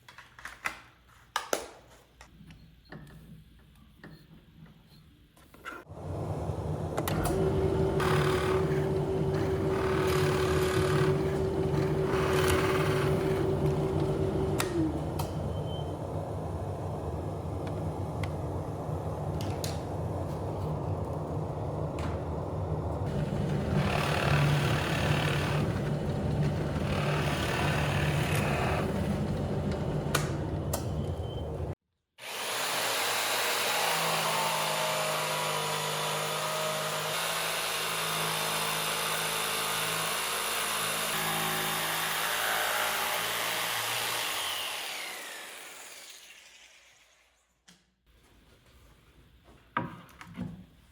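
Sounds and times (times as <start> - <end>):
high-whining machine winding down: 6.0 - 19.8, 22.8 - 31.8
power tool cutting wood: 6.9 - 15.4, 23.1 - 31.2, 32.2 - 47.5.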